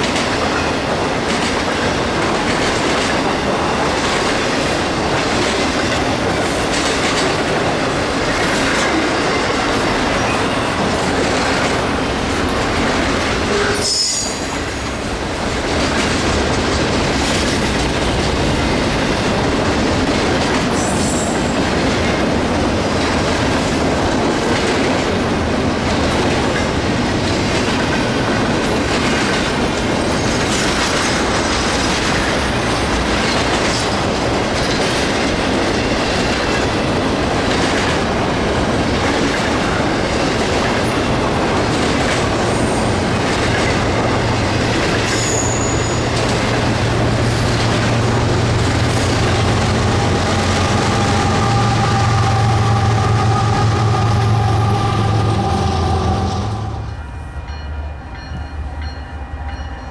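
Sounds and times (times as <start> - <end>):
freight train cars clattering: 0.0 - 59.9
high wheel squeal: 13.5 - 15.0, 45.0 - 46.3.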